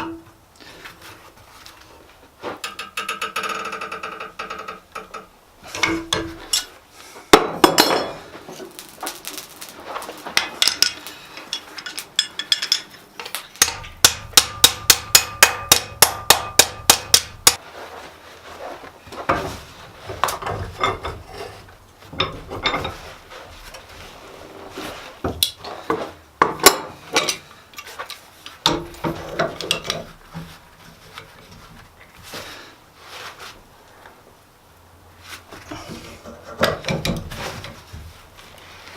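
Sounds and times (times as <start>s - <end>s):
metal knocks and clinks: 2.6s - 6.7s, 7.4s - 8.2s, 10.4s - 17.6s
hammer ringing on anvil: 13.6s - 17.6s.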